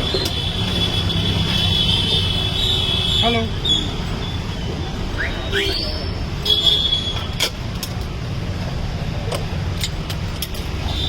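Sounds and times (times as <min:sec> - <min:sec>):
road traffic rumble: 0:00.0 - 0:11.0
high squeal: 0:03.6 - 0:07.3.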